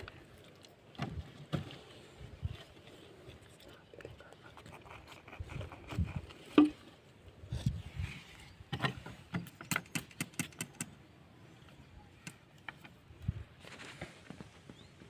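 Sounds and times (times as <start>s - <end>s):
hard objects clicking and knocking: 8.7s - 11.0s.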